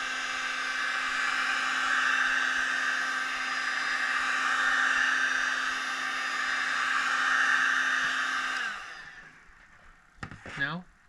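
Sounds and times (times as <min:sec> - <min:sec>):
hot air gun blowing: 0:00.0 - 0:09.5.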